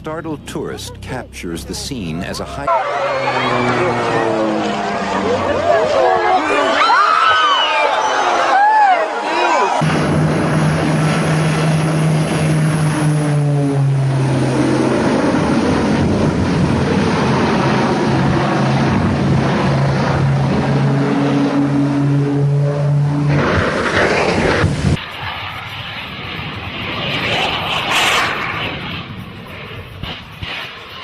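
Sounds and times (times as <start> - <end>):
engine droning: 0.0 - 6.8, 9.8 - 27.6.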